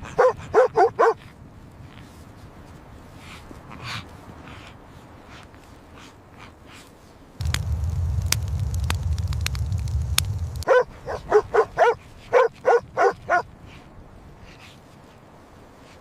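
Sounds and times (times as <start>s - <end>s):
dog yapping barks: 0.0s - 1.2s, 10.7s - 13.4s
low rumble: 7.4s - 10.7s.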